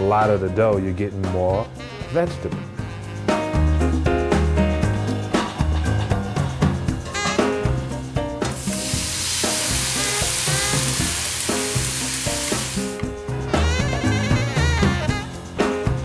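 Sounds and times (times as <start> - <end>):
background music: 0.0 - 16.0
food sizzling in pan: 8.4 - 13.2.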